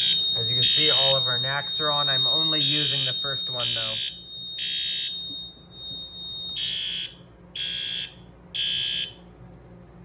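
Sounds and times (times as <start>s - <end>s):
steady high tone: 0.0s - 7.2s
fire alarm horn blasts: 0.0s - 9.3s.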